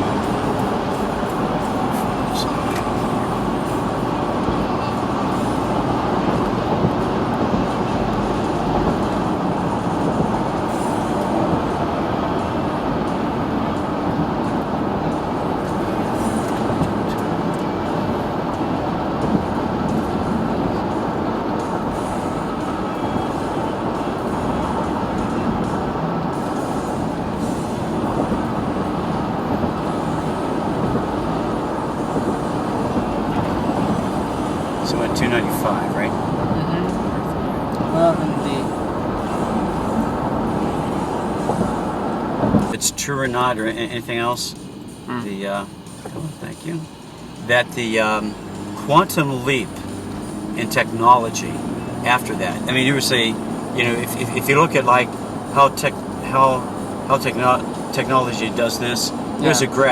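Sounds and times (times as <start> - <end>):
car engine running: 0.0 - 59.9
road noise inside car: 0.0 - 59.9.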